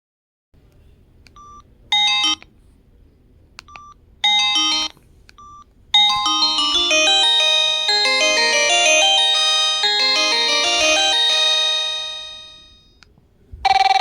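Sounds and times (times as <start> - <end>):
phone key beeps: 1.4 - 2.5, 3.7 - 6.6
polyphonic phone ringtone: 2.0 - 2.4, 4.2 - 4.9, 6.0 - 13.0, 13.7 - 14.0.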